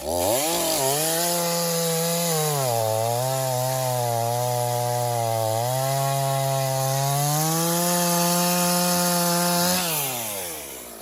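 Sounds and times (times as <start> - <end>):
chainsaw cutting through log: 0.0 - 11.0.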